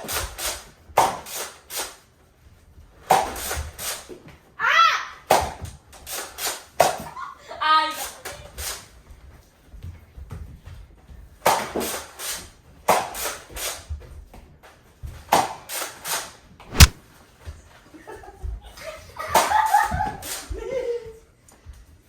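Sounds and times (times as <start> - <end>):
sharp knock: 16.7 - 17.0
toy dart blaster firing: 16.7 - 17.0.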